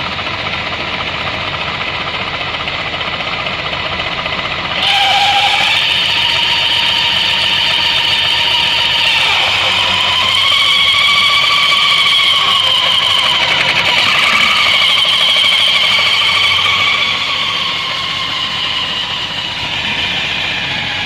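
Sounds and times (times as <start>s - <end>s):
high whistle from scooter drive: 4.8s - 21.0s.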